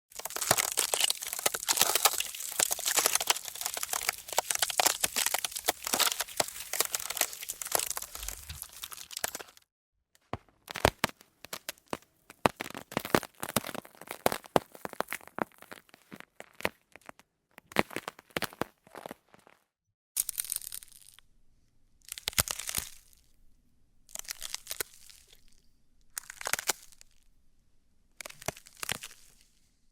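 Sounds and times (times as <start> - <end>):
ice cracking: 0.1 - 9.6, 10.7 - 16.8, 26.2 - 27.1, 28.2 - 29.5.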